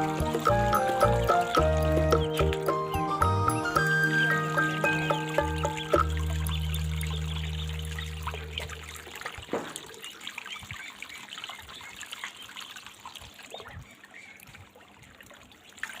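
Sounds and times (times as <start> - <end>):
low musical chord: 0.0 - 9.1
water trickling and splashing: 0.0 - 16.0.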